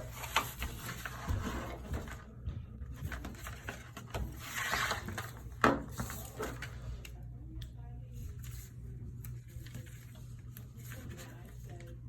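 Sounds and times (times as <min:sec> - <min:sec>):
cardboard being folded: 0:00.0 - 0:02.3, 0:02.9 - 0:06.8, 0:09.3 - 0:12.0.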